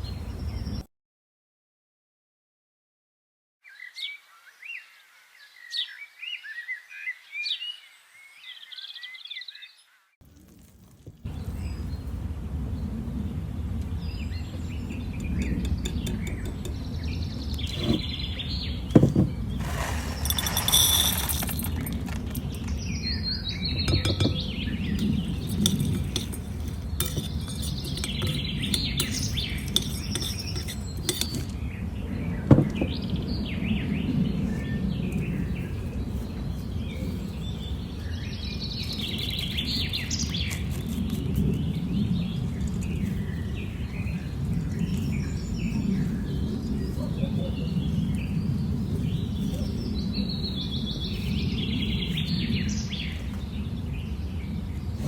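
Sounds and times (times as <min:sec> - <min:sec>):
birds chirping: 0:11.1 - 0:55.0
low background rumble: 0:11.2 - 0:39.0
sharp clinks: 0:19.6 - 0:22.6, 0:25.0 - 0:31.5.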